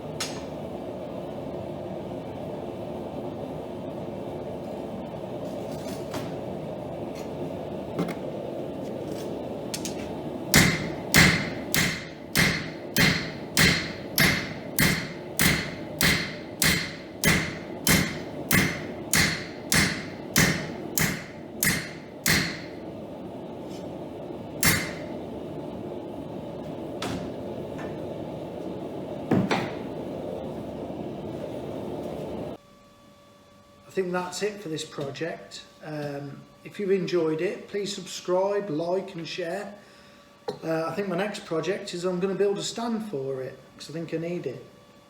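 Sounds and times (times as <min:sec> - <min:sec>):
hammer striking steel on anvil: 0:10.6 - 0:22.8, 0:24.6 - 0:25.1.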